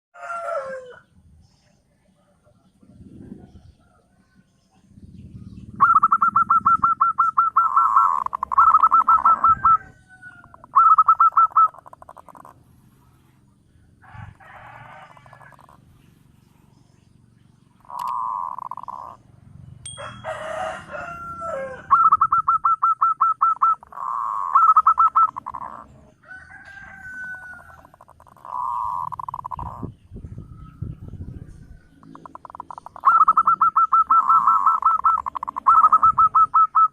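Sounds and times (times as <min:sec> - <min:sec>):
doves cooing: 0:02.6 - 0:16.4, 0:17.4 - 0:36.9
dove call with falling pitch: 0:05.2 - 0:12.6, 0:17.8 - 0:19.2, 0:19.9 - 0:36.9.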